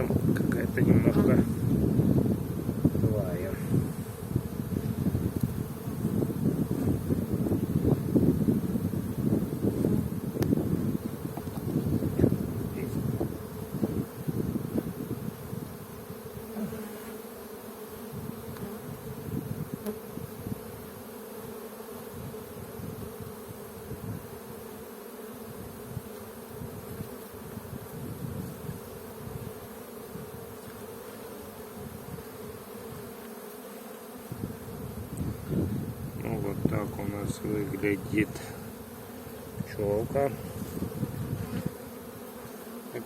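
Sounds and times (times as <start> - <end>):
honey bees buzzing: 0.0 - 43.0.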